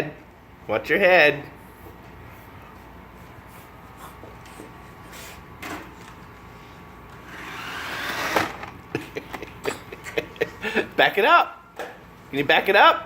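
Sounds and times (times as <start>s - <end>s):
toy car motor whirring: 7.2s - 8.6s.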